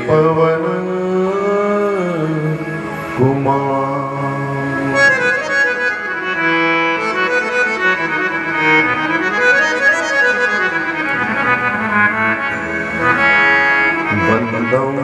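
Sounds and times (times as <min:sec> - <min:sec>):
devotional singing: 0:00.0 - 0:05.3, 0:14.1 - 0:15.0
harmonium playing: 0:00.0 - 0:15.0.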